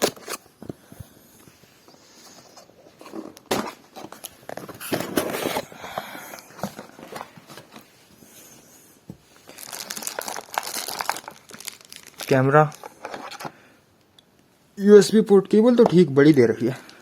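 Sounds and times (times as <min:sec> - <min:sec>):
plastic and cardboard rustling: 0:00.0 - 0:13.6.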